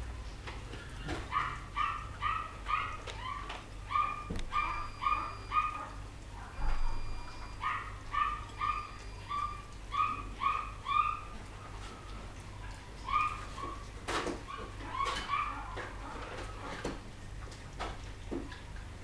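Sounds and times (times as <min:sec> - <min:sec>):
puppies whimpering and yipping: 0:01.3 - 0:06.0, 0:06.7 - 0:12.4, 0:13.0 - 0:16.8.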